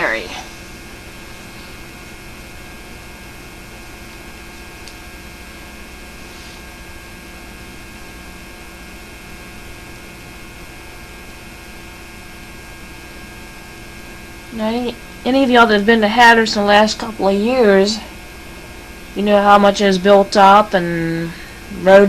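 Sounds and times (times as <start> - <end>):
electrical hum: 0.0 - 22.0
tape hiss: 0.0 - 22.0.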